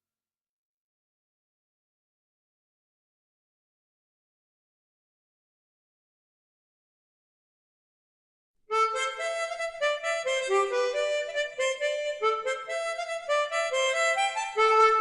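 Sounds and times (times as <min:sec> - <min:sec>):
harmonica playing lively melody: 0:08.7 - 0:15.0.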